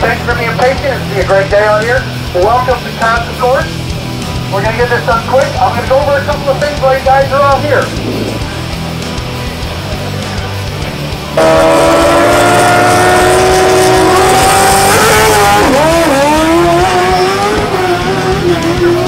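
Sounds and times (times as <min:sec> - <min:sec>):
race car engine at high revs: 0:07.8 - 0:09.3, 0:11.3 - 0:19.0.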